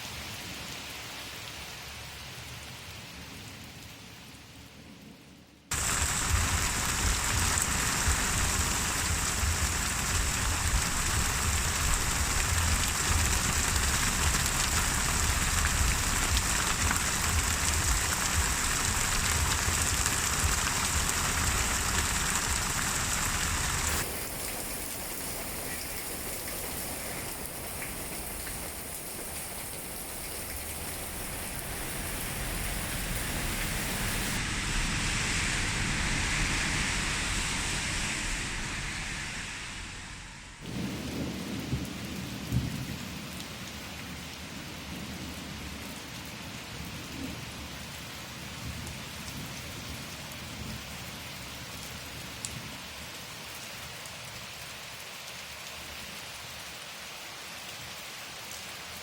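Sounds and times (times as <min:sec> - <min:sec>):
steady rain: 0:00.0 - 0:59.0
deep low rumble: 0:05.7 - 0:41.8.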